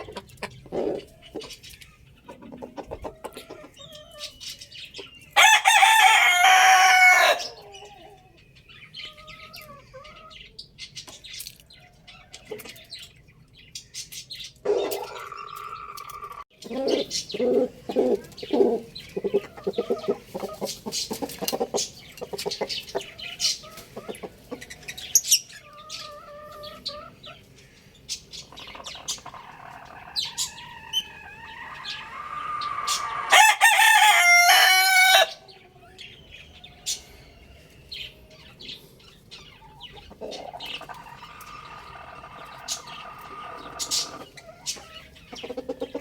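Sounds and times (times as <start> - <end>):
bird calls: 0.0 - 46.0
chicken clucking: 0.0 - 46.0
rooster crowing: 5.4 - 7.7, 30.7 - 35.4.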